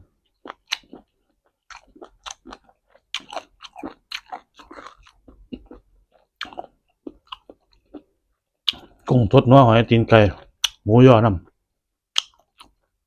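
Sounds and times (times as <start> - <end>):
person chewing and crunching food: 0.0 - 9.4, 10.0 - 10.8, 11.4 - 13.0.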